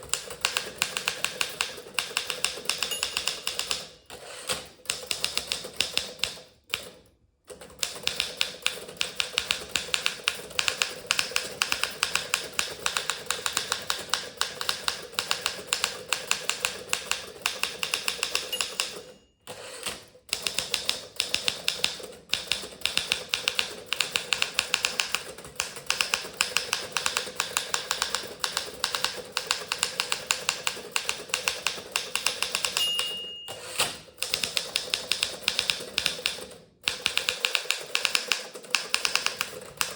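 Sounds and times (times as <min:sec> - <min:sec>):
typewriter typing: 0:00.0 - 0:39.9
typewriter margin bell ring: 0:02.6 - 0:03.9, 0:18.2 - 0:19.4, 0:32.6 - 0:34.1.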